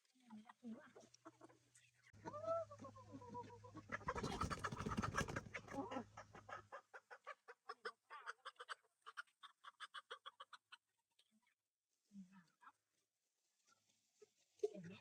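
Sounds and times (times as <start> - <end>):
chickens clucking and squawking: 0.2 - 11.5.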